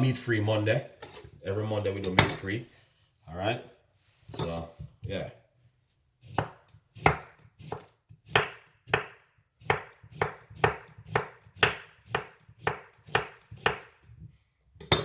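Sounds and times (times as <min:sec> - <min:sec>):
knife chopping on cutting board: 0:06.2 - 0:14.0.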